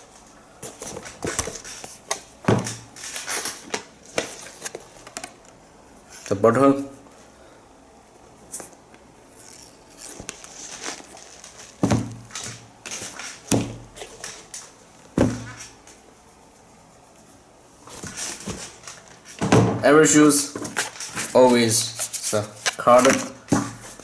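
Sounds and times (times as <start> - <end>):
sneakers rustling: 17.8 - 24.0.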